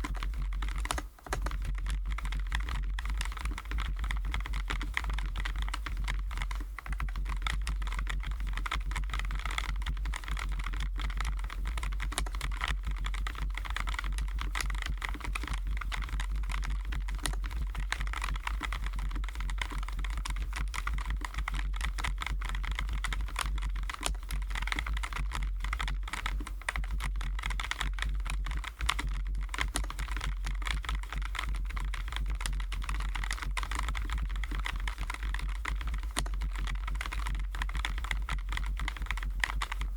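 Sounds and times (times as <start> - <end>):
mechanical keyboard typing: 0.0 - 39.9
steady low hum: 0.0 - 39.9.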